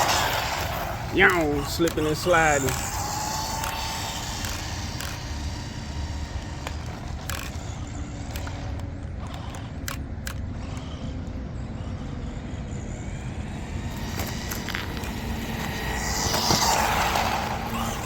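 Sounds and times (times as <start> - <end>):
sharp clicks and knocks: 0.0 - 11.3
rc truck electric motor: 0.0 - 18.0.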